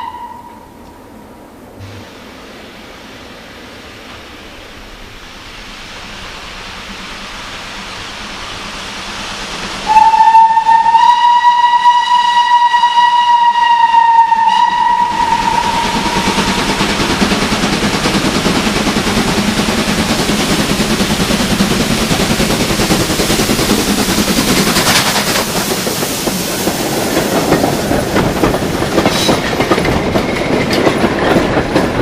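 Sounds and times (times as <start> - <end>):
steam train whistle blast: 0.0 - 0.7, 9.9 - 16.6
steam train passing: 0.0 - 32.0.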